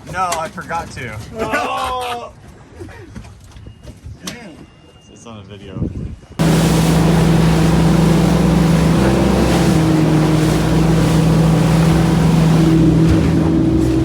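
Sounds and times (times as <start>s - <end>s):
boat engine running: 6.4s - 14.0s
wind and water rushing: 6.4s - 14.0s.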